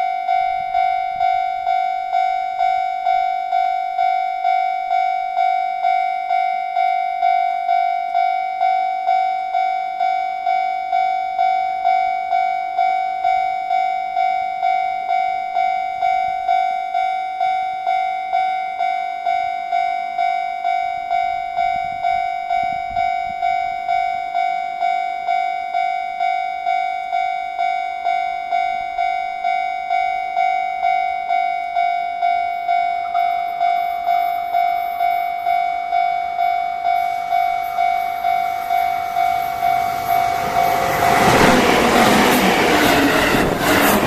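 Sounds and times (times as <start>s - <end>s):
level crossing warning bell: 0.0s - 43.5s
approaching train: 28.0s - 44.0s.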